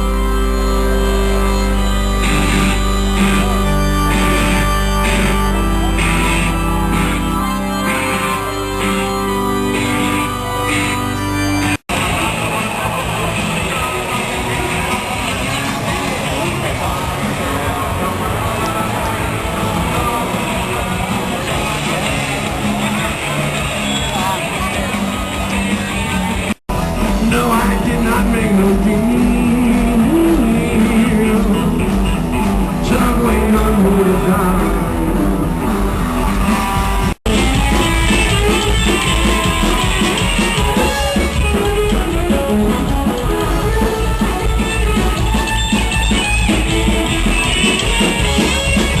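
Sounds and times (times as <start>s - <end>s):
drum kit: 0.0s - 49.0s
electric guitar: 0.0s - 49.0s
person singing: 27.0s - 35.9s.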